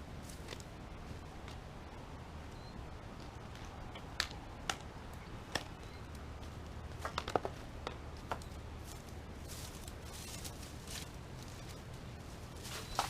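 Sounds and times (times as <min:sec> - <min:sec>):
low steady hum: 0:00.0 - 0:13.0
sharp snaps and taps: 0:03.2 - 0:08.5.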